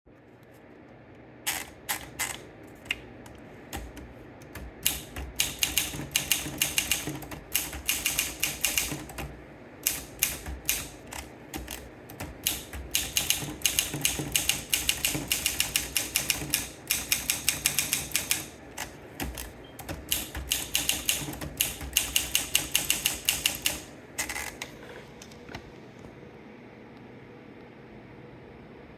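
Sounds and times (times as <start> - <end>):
manual typewriter typing: 1.5 - 2.8, 3.7 - 24.6.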